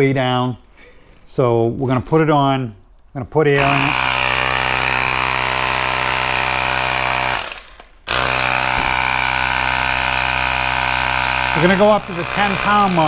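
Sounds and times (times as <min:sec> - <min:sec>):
electric air compressor running: 0:03.6 - 0:13.0.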